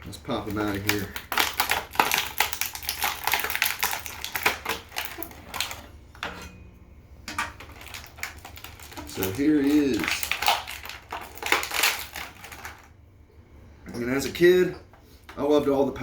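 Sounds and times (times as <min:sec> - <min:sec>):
plastic packaging crackling: 0:00.0 - 0:05.9, 0:07.3 - 0:13.0.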